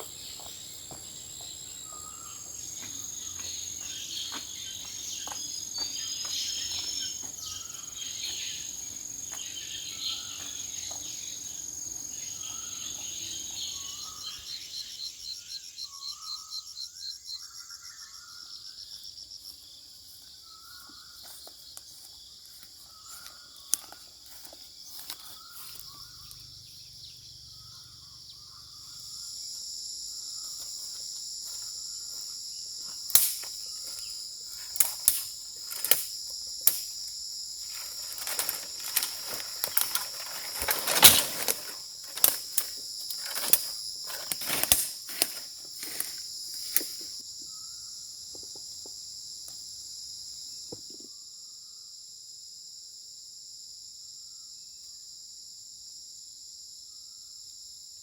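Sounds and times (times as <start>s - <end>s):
insects trilling: 0.0s - 58.0s
sharp cracks and knocks: 33.1s - 33.7s, 34.7s - 37.0s, 37.7s - 47.0s.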